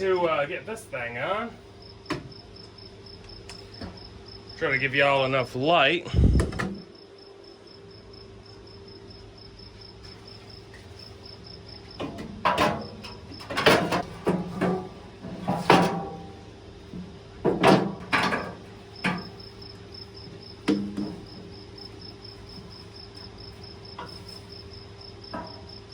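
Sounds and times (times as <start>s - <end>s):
crickets chirping: 0.0s - 25.9s
thump: 6.2s - 6.7s
metal clanks and knocks: 12.0s - 19.4s, 25.3s - 25.7s.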